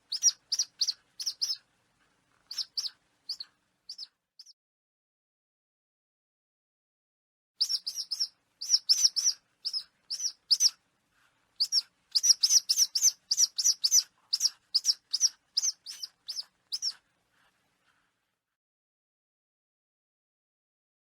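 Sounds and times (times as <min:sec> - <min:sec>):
bird of prey calling: 0:00.0 - 0:01.6, 0:02.5 - 0:04.5, 0:07.6 - 0:10.8, 0:11.6 - 0:17.0.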